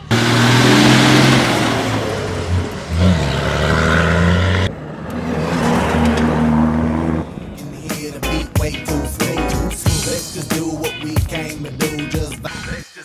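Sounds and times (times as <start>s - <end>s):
rally car engines at high revs: 0.0s - 8.1s.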